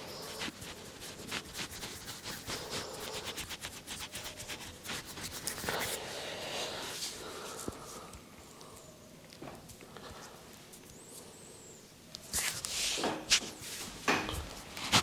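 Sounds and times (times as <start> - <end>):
hands scratching through hair: 0.0 - 8.0, 12.2 - 15.0.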